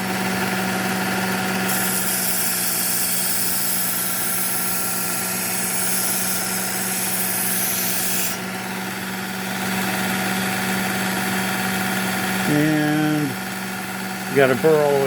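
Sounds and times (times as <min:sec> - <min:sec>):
belt sharpener motor running: 0:00.0 - 0:15.0
knife grinding on belt: 0:01.7 - 0:08.4.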